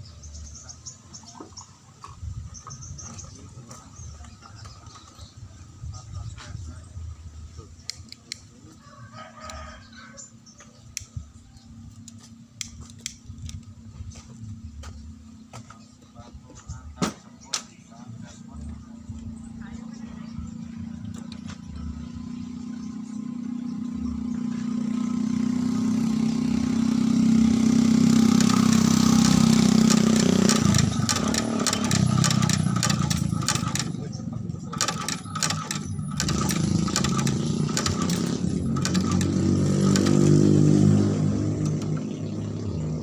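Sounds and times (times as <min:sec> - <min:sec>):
stitching machine humming: 0:27.8 - 0:34.1, 0:34.7 - 0:42.2
sharp clicks: 0:28.4 - 0:34.1, 0:34.7 - 0:42.1.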